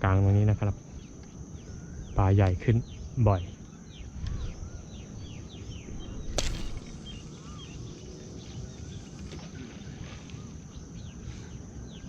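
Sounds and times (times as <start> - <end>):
birds chirping: 0.0 - 12.0
high insect drone: 0.0 - 12.0
sharp snap: 6.3 - 7.2.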